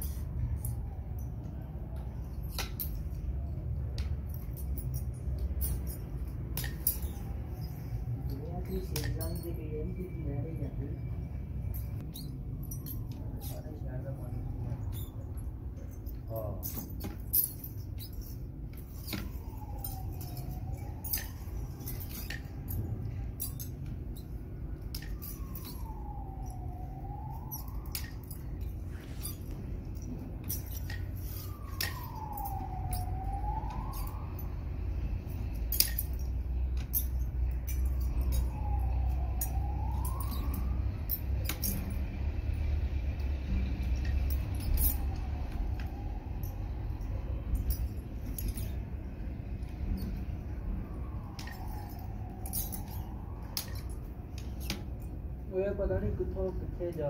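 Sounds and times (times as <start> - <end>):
siren-like wail: 0.0 - 57.0.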